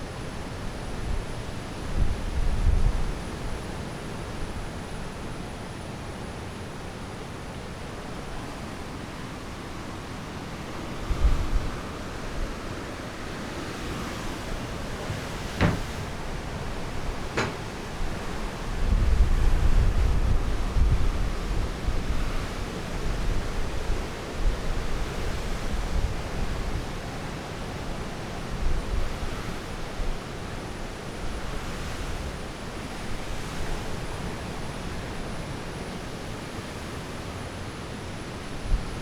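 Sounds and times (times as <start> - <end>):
wind buffeting microphone: 11.0 - 25.0.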